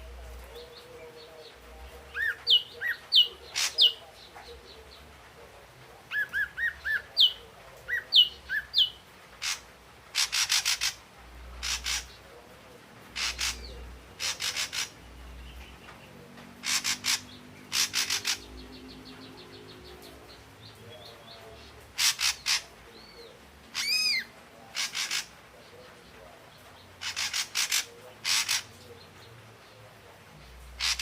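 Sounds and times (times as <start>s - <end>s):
faint low hum: 0.0s - 10.1s
bird harsh rasping notes: 6.1s - 12.2s, 13.1s - 15.7s, 16.6s - 20.1s, 21.9s - 25.4s, 27.0s - 28.8s, 30.7s - 31.0s.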